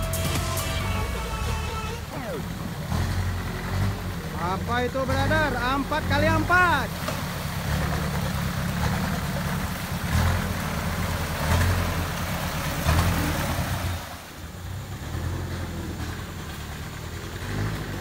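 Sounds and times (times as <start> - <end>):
truck engine revving: 0.0 - 18.0.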